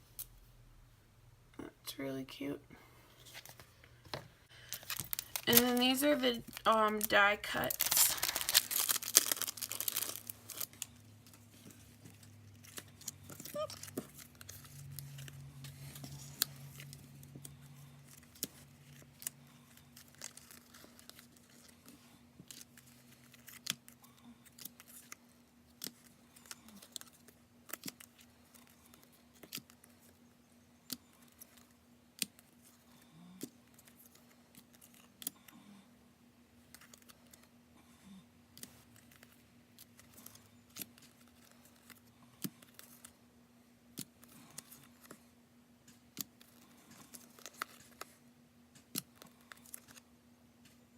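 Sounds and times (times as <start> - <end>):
faint steady hum: 0.0 - 50.9
paper and plastic rustling: 3.2 - 25.2.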